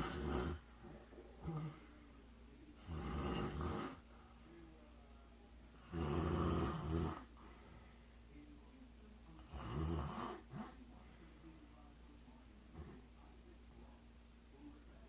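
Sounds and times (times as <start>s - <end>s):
woman snoring: 0.0s - 0.6s, 2.9s - 4.0s.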